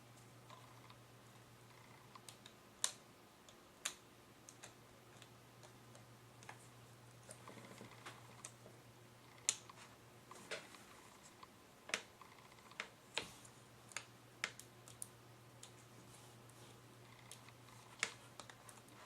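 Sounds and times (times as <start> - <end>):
faint low hum: 0.0 - 19.0.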